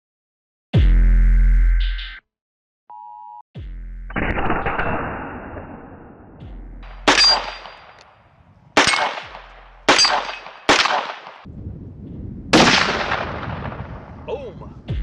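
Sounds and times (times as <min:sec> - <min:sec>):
rifle shots with ringing tail: 0:04.1 - 0:08.0, 0:08.8 - 0:11.5, 0:12.5 - 0:14.2.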